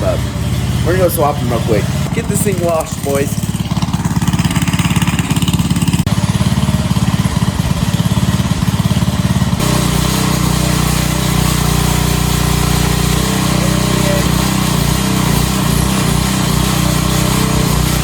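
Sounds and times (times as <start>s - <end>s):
pressure washer gas engine running: 0.0s - 18.0s.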